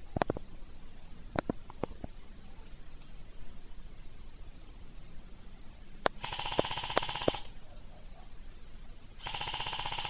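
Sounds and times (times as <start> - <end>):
airsoft gun firing full-auto: 6.2 - 7.5, 9.2 - 10.0.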